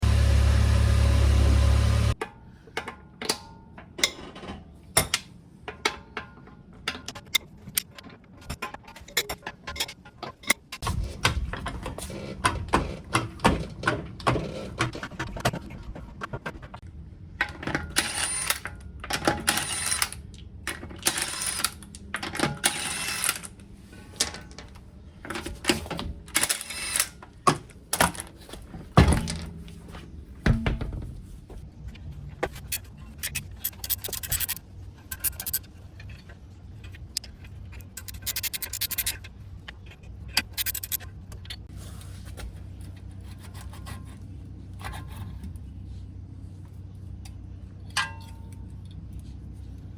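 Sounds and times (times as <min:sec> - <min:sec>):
metal tools clinking: 0:32.6 - 0:39.3, 0:40.0 - 0:41.6.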